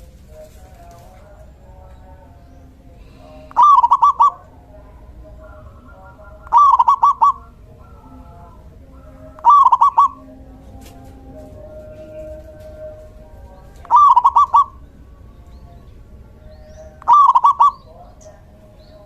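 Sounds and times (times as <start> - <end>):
birds chirping faintly: 0.0 - 19.0
dove cooing: 3.2 - 10.8, 13.6 - 14.9, 16.8 - 18.5.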